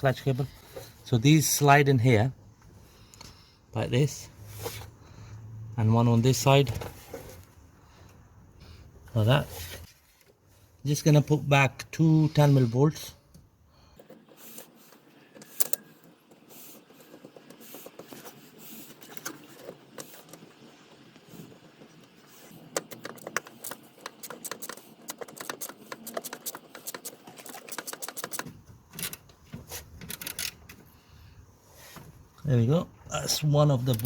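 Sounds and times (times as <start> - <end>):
metal clicks and scrapes: 21.6 - 30.8.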